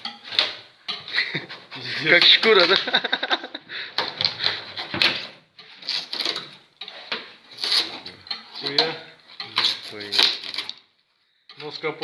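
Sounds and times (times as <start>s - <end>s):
body filler scraping and cracking: 4.2s - 10.9s.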